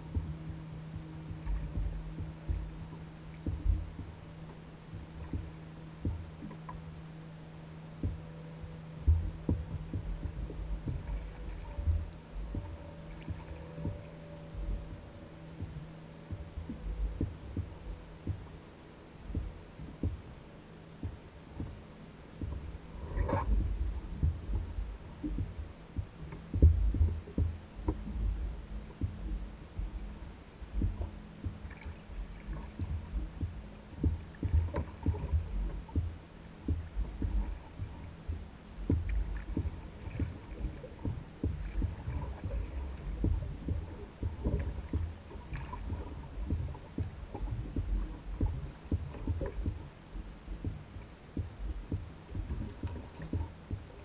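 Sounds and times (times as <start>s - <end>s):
water knocking against canoe hull: 1.0s - 6.8s, 9.1s - 15.0s, 22.4s - 29.9s, 30.8s - 49.9s, 50.5s - 54.0s.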